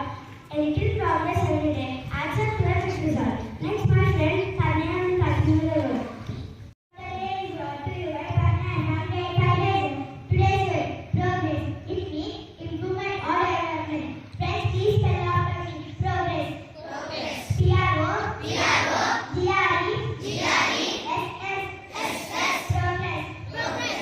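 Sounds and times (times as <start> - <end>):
children singing: 18.4 - 19.3, 23.5 - 24.0.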